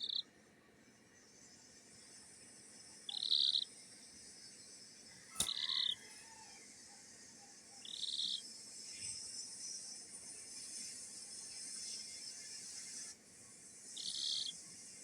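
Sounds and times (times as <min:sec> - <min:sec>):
chicken trilling chirps: 0:05.3 - 0:06.4
sharp click: 0:05.4 - 0:05.8.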